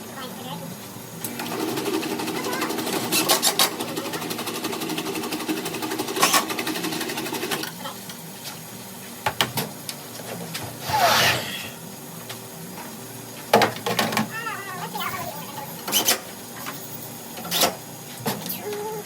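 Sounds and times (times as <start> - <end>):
small electric motor rattling: 1.2 - 7.7.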